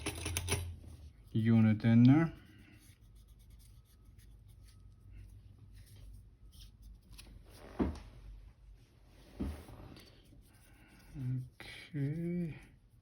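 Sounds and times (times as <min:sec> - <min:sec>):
small tools handled: 0:00.0 - 0:00.8.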